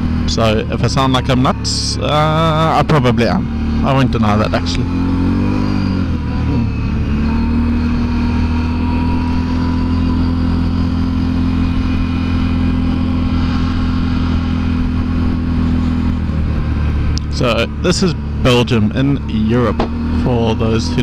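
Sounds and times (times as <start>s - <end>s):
atv engine running: 0.0s - 21.0s.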